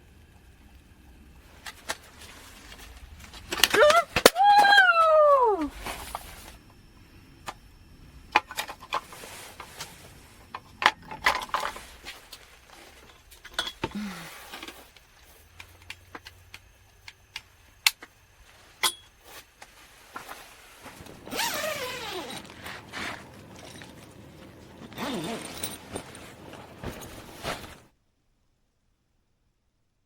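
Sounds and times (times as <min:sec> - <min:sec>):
gear clicking and clinking: 0:20.2 - 0:27.8.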